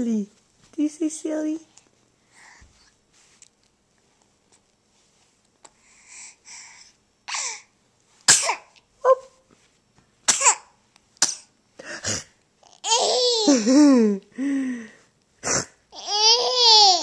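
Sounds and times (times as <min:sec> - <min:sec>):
breathy huffs: 0:14.3 - 0:15.8.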